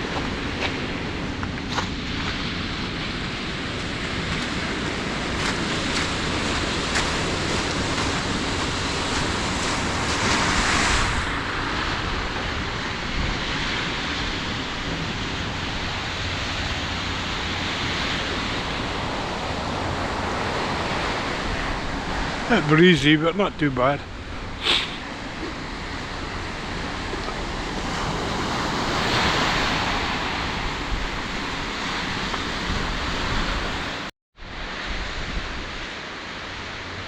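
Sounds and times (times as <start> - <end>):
wind buffeting the microphone: 0.0 - 22.8, 23.5 - 35.9
surf breaking on a beach: 0.0 - 37.0.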